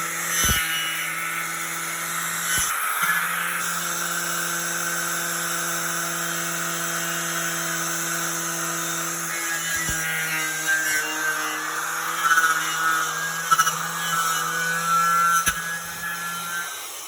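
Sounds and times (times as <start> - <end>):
wire wheel grinder scratching steel: 0.0 - 4.4, 8.8 - 16.7.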